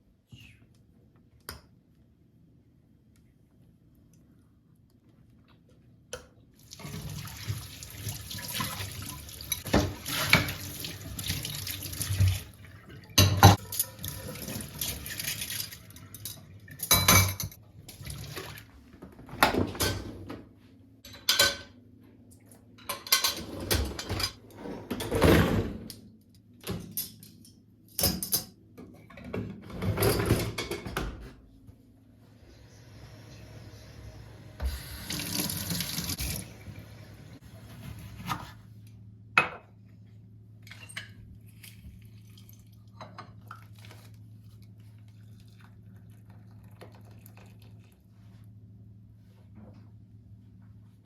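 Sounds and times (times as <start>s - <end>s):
kitchen tap running: 6.6s - 17.2s, 32.9s - 37.4s.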